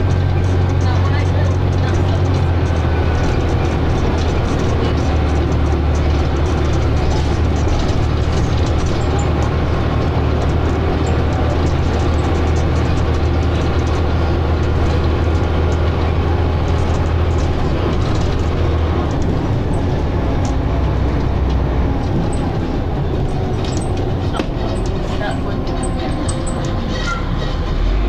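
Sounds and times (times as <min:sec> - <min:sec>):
faint clicks and rattles: 0:00.0 - 0:27.6
bus engine droning: 0:00.0 - 0:28.0.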